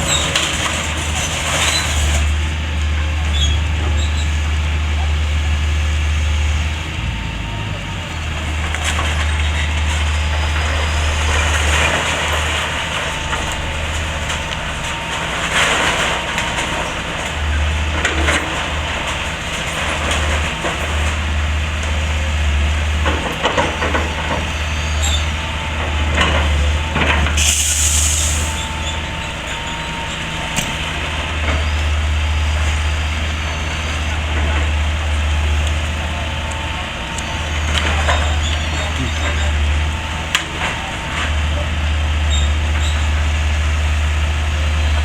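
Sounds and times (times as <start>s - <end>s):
excavator engine running: 0.0s - 45.0s
short hiss: 27.4s - 28.6s.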